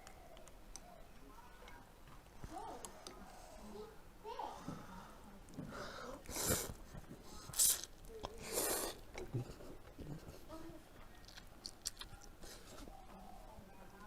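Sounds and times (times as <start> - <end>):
person chewing: 11.0 - 12.8.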